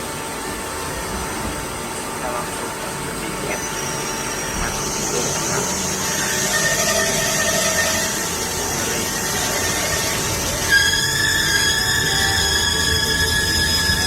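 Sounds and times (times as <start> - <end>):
metal lathe whining: 0.0 - 14.0
thin squealing tone: 3.5 - 14.0.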